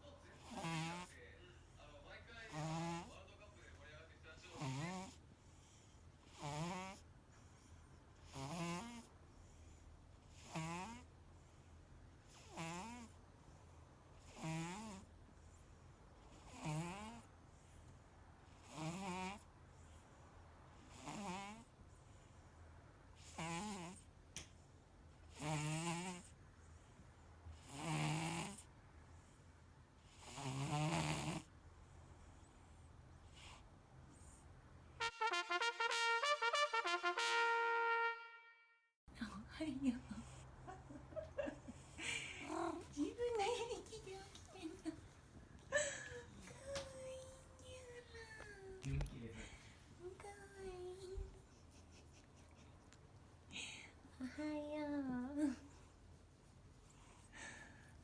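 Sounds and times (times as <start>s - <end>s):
cat snoring: 0.4s - 1.2s, 2.5s - 3.2s, 4.5s - 11.5s, 12.3s - 13.2s, 14.2s - 15.1s, 16.2s - 17.8s, 18.5s - 20.0s, 20.8s - 22.2s, 23.2s - 24.1s, 25.3s - 26.9s, 27.5s - 28.7s, 30.0s - 31.5s, 41.8s - 42.8s.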